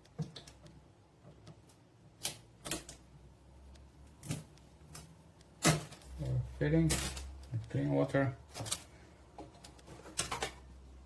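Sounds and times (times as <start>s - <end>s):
clicks and knocks of handled parts: 6.8s - 7.8s.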